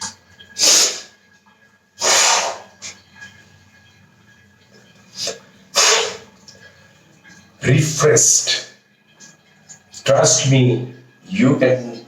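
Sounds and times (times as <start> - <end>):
air blasts out through nose: 2.0 - 2.7, 5.2 - 6.2.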